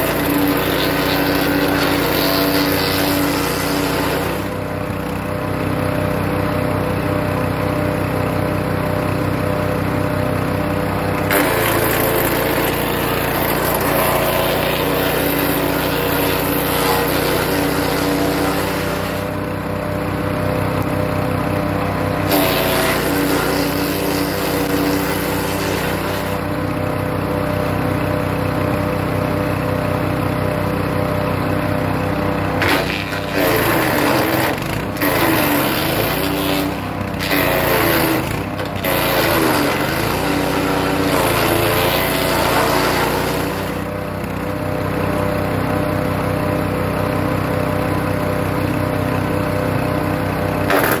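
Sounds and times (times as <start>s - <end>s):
branches grinding and shredding: 0.0s - 4.6s, 11.1s - 19.4s, 21.4s - 26.5s, 32.6s - 43.8s, 50.7s - 51.0s
wood chipper engine running: 0.0s - 51.0s.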